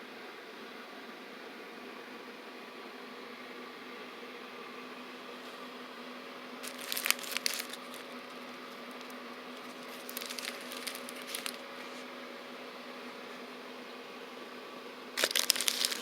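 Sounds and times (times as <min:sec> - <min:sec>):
crinkling of wrapped firecrackers: 0:06.6 - 0:12.1, 0:15.2 - 0:16.0.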